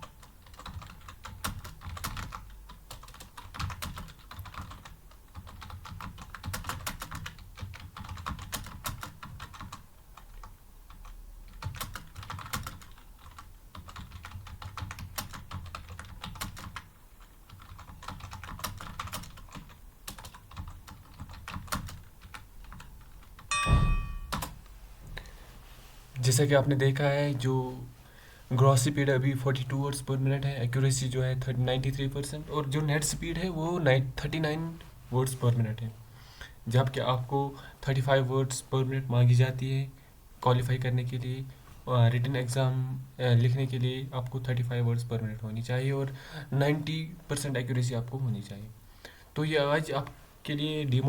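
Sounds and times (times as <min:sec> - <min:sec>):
fast keyboard typing: 0:00.0 - 0:23.6, 0:24.3 - 0:24.5
thump with ringing tone: 0:23.5 - 0:24.5.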